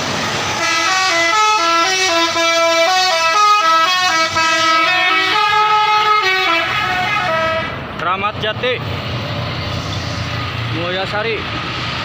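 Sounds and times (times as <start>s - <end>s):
musical air horn melody: 0.6s - 7.7s.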